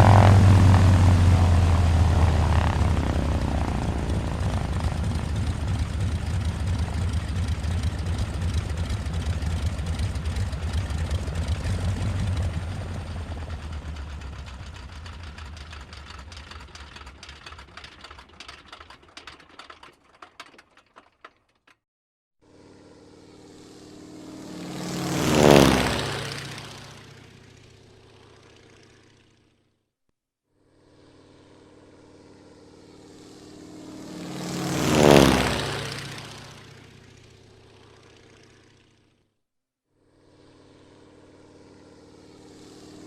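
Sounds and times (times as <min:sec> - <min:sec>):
propeller airplane engine: 0:00.0 - 0:21.8, 0:22.5 - 0:29.7, 0:30.7 - 0:39.3, 0:40.0 - 0:43.0.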